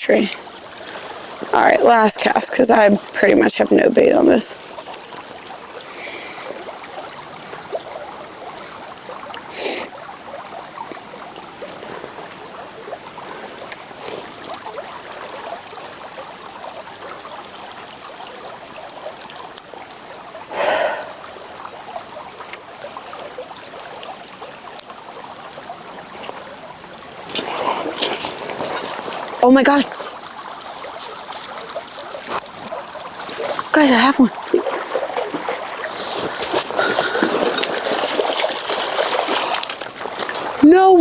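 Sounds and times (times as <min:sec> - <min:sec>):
stream water running: 0:00.0 - 0:41.0
small ticks: 0:22.0 - 0:23.3, 0:24.3 - 0:26.4, 0:28.0 - 0:33.7.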